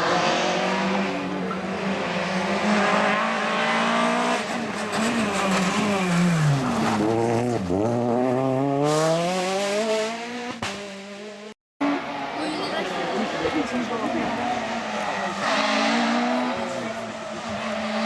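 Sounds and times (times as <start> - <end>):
rally car engine revving: 0.0 - 18.0.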